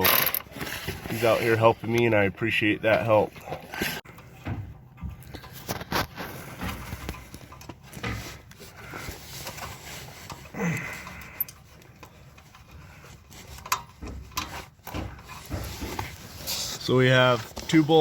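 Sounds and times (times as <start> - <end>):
person grunting: 10.6 - 11.0.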